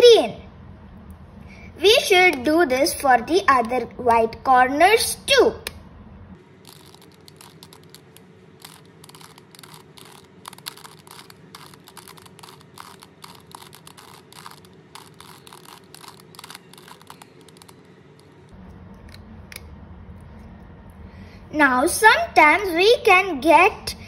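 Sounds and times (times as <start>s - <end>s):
puzzle cube clicking and rattling: 6.6s - 18.5s.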